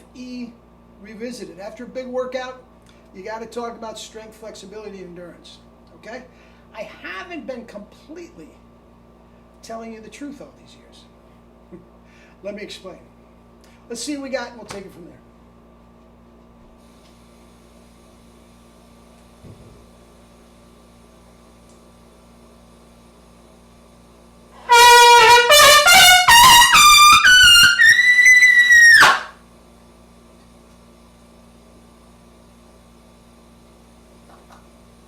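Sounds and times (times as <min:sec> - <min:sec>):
low room hum: 0:00.0 - 0:35.0
trumpet playing rising notes: 0:24.6 - 0:29.4.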